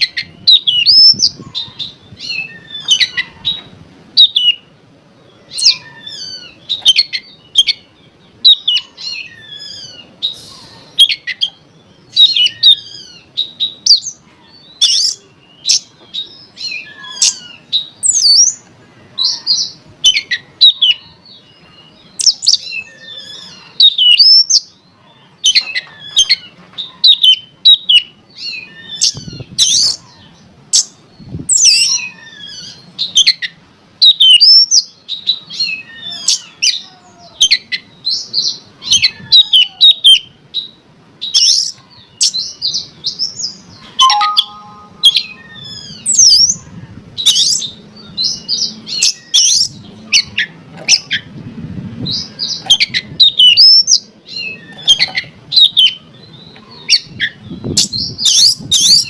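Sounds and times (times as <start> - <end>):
bird singing whistles and chatter: 30.7 - 46.6, 52.1 - 59.0.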